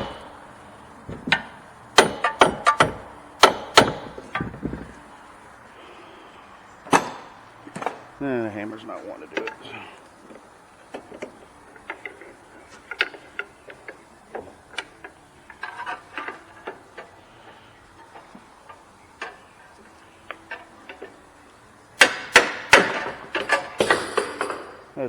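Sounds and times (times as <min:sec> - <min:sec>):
hammer blows on metal: 0:00.0 - 0:05.0
tools clicking and tapping: 0:00.0 - 0:05.0, 0:09.4 - 0:21.4, 0:22.0 - 0:24.8.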